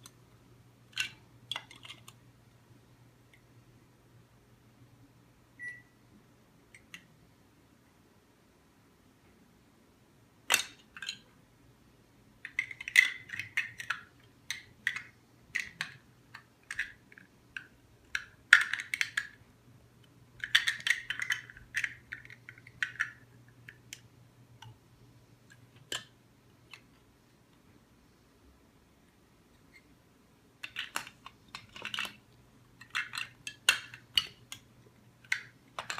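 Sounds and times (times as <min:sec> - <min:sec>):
plastic pieces clicking and clattering: 0:00.9 - 0:02.2, 0:10.4 - 0:11.3, 0:12.4 - 0:19.4, 0:20.0 - 0:24.8, 0:25.5 - 0:27.6, 0:30.6 - 0:35.9.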